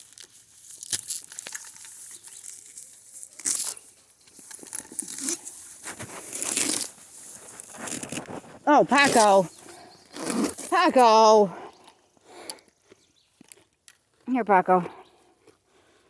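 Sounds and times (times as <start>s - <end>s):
rustling and crinkling: 0.0s - 11.2s.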